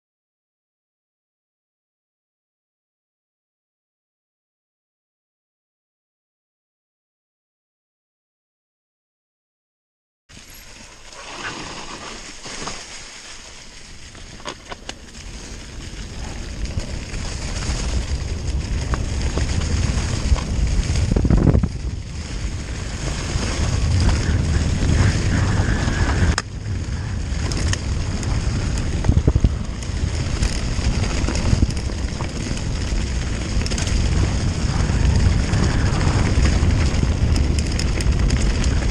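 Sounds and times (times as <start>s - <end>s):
bike tyres rumbling on trail: 10.3s - 38.9s
wind buffeting microphone: 13.9s - 38.9s.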